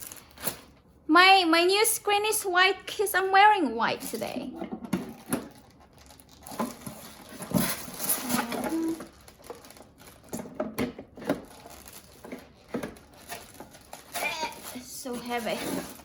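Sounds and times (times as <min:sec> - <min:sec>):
packaging rustling: 0:05.0 - 0:16.0.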